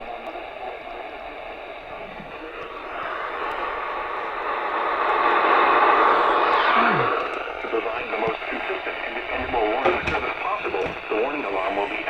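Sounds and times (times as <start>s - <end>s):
radio static hiss: 0.0s - 12.0s.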